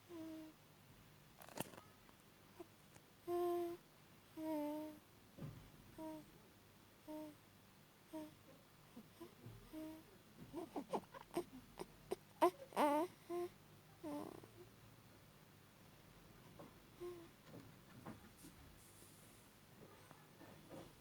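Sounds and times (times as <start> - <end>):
baby snoring hums: 0.0 - 0.6, 2.6 - 3.8, 4.4 - 5.0, 6.0 - 6.3, 7.0 - 7.4, 8.1 - 8.4, 9.0 - 14.6, 17.0 - 17.3.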